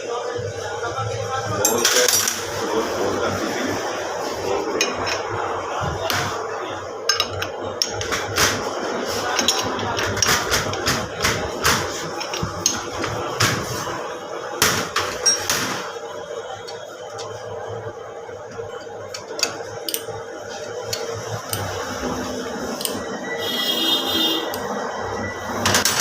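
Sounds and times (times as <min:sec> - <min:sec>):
steady hum: 0:00.0 - 0:26.0
metal tools clinking on metal: 0:09.4 - 0:09.8.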